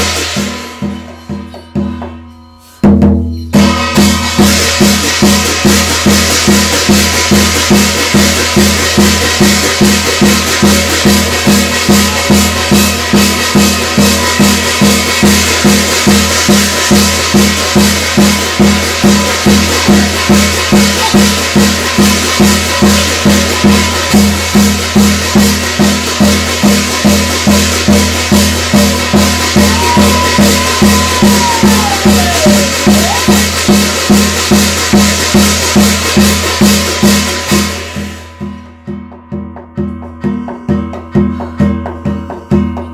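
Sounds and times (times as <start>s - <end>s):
drum beating steady rhythm: 0.0s - 42.9s
rattling high percussion: 0.0s - 42.9s
sliding high tone: 28.6s - 33.9s.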